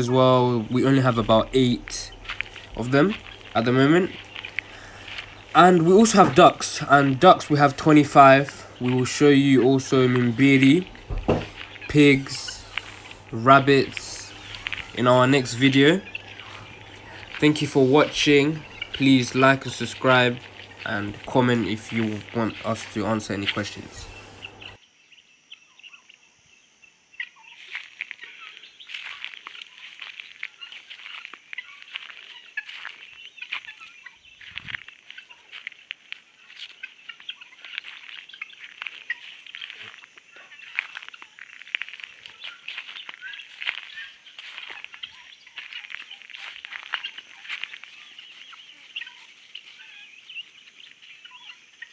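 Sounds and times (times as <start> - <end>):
poultry calling: 0.0 - 24.8.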